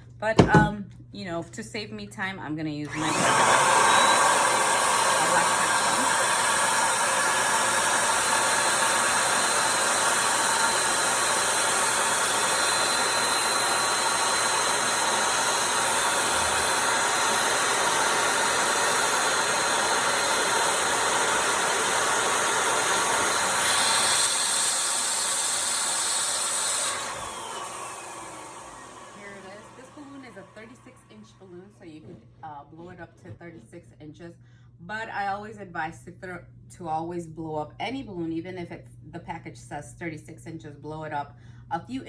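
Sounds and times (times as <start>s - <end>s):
electric balloon pump running: 0.4s - 0.8s, 2.9s - 32.0s
pump motor winding down whine: 2.9s - 31.4s.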